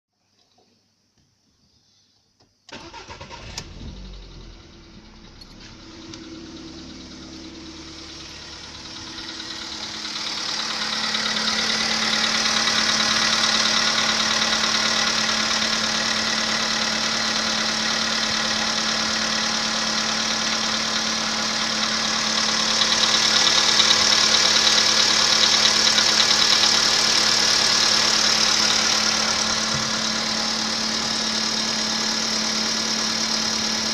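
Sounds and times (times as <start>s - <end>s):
car engine idling: 2.7s - 33.9s
rapid engine knocking: 8.5s - 33.9s.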